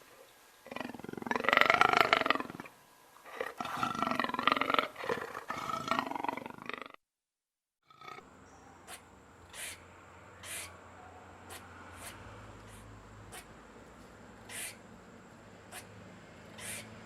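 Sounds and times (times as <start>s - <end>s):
large animal rough calls: 0.7s - 7.0s, 7.8s - 13.6s, 14.4s - 14.8s, 16.5s - 17.0s.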